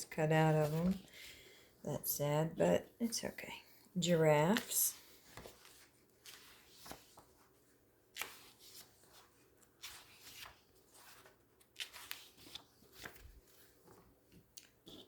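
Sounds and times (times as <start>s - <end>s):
magazine pages rustling: 4.5s - 15.0s.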